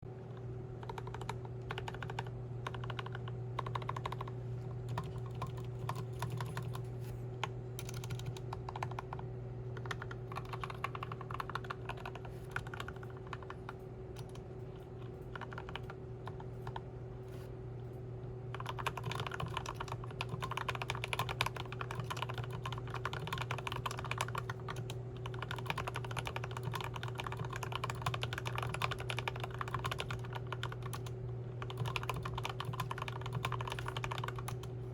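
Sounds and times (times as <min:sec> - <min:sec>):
steady low hum: 0:00.1 - 0:34.9
mechanical keyboard typing: 0:00.8 - 0:06.9, 0:07.8 - 0:09.2, 0:09.8 - 0:14.4, 0:15.0 - 0:16.9, 0:18.5 - 0:34.7.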